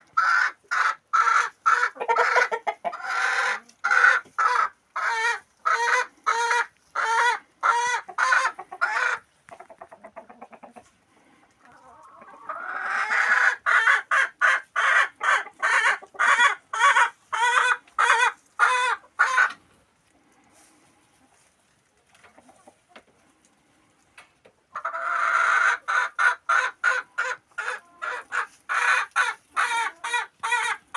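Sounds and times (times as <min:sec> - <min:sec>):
chicken clucking: 0:00.0 - 0:30.9.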